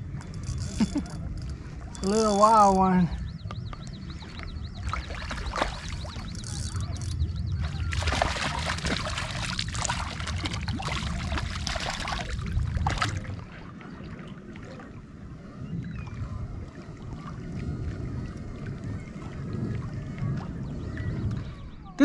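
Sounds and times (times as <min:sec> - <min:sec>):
crackly handling noise: 0:00.0 - 0:02.0
water splashing and sloshing: 0:00.0 - 0:22.0
wind rumble on microphone: 0:00.0 - 0:22.0.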